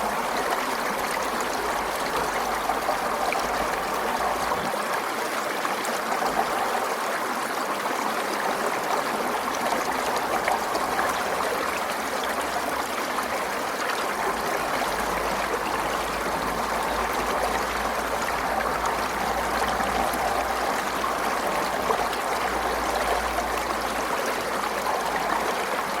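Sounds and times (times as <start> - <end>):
stream running over rocks: 0.0 - 26.0.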